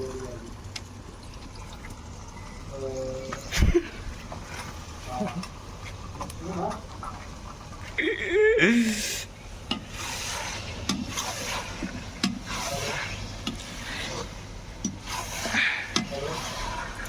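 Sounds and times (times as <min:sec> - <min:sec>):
rhythmic scraping strokes: 0:09.0 - 0:17.0.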